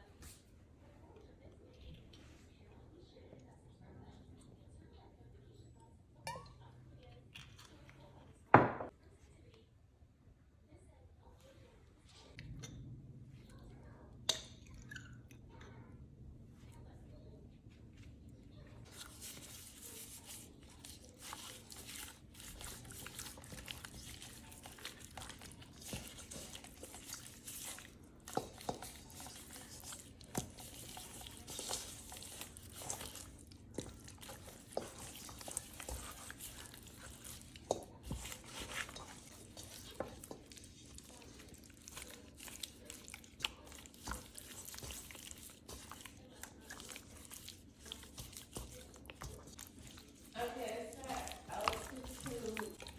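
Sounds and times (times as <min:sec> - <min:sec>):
rustling and crinkling: 0:17.7 - 0:52.9.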